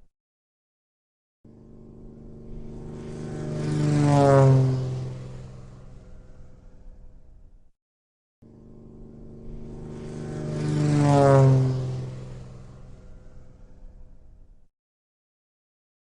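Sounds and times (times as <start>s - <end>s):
propeller airplane flying past: 1.5s - 7.7s, 8.4s - 14.7s.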